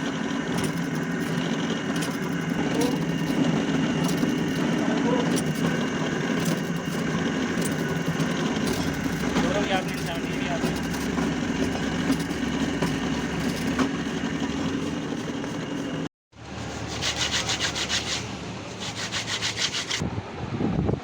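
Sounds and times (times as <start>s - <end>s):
hand tool scraping metal: 0.0s - 16.1s
steady background hum: 0.0s - 19.0s.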